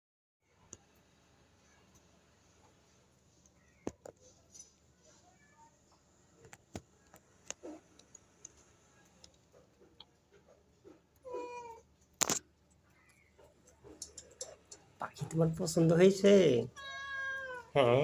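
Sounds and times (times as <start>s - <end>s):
light clicks and taps: 5.9s - 11.3s, 12.0s - 15.4s
cat meowing: 11.2s - 11.8s, 16.7s - 17.8s.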